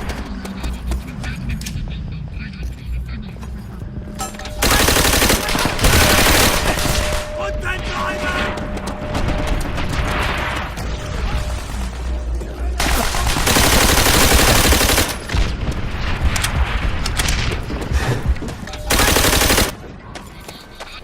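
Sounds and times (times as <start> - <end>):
machine-gun fire bursts: 4.6 - 7.2, 12.8 - 15.6, 18.9 - 19.8
gunfire: 4.6 - 7.4, 12.8 - 17.6.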